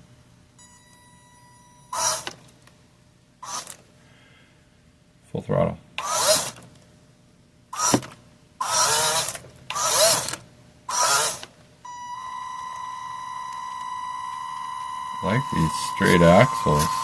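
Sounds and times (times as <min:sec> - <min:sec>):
toy car motor whirring: 0:01.9 - 0:02.4, 0:03.4 - 0:03.8, 0:06.0 - 0:06.7, 0:07.8 - 0:11.5, 0:15.4 - 0:17.0
high electronic beep: 0:11.9 - 0:17.0.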